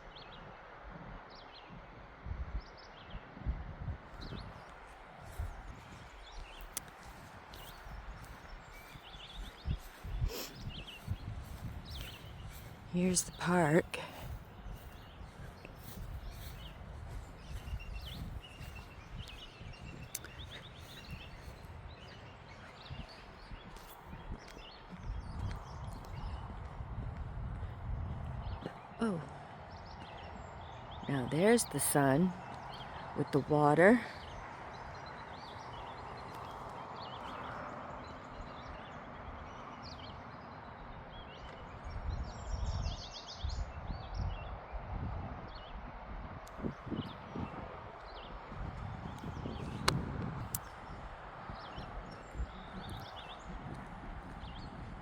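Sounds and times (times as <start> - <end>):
small birds chirping: 4.2 - 44.5, 46.5 - 55.0
soft walking thuds: 4.6 - 28.8.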